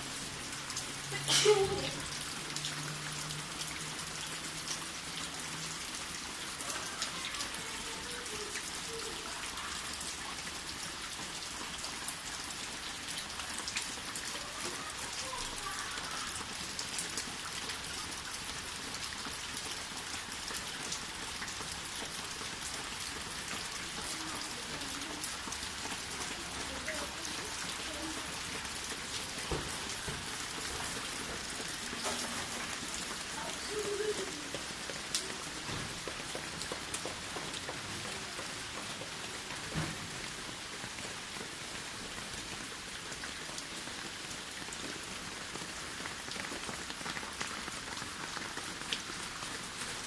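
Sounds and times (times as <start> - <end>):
steady rain falling: 0.0 - 50.0.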